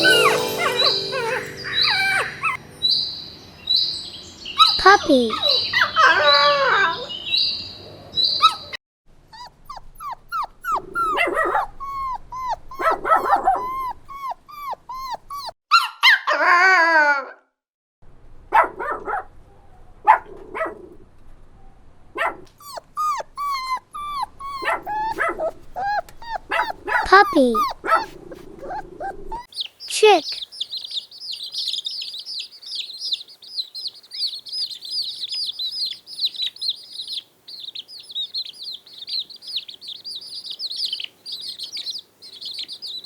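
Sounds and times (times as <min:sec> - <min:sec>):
puppy yipping and whimpering: 0:00.0 - 0:02.6, 0:04.6 - 0:07.2, 0:08.3 - 0:16.6, 0:22.4 - 0:29.7.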